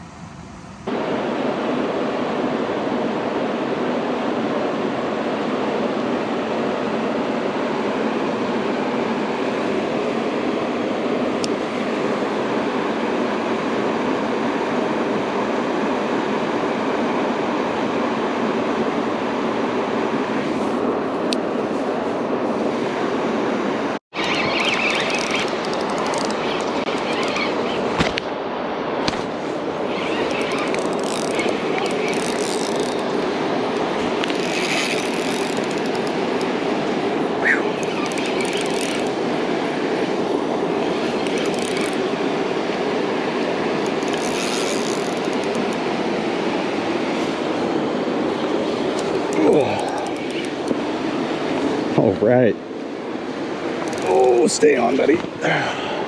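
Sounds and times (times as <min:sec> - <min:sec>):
river water rushing: 0:24.2 - 0:52.0.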